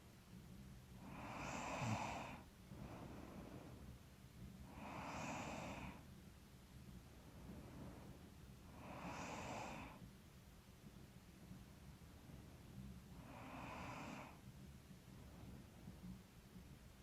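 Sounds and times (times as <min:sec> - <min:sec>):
woman snoring: 0:01.0 - 0:02.4, 0:04.7 - 0:06.0, 0:08.8 - 0:10.0, 0:13.3 - 0:14.4
woman breathing heavily through nose: 0:01.0 - 0:04.0, 0:04.7 - 0:06.0.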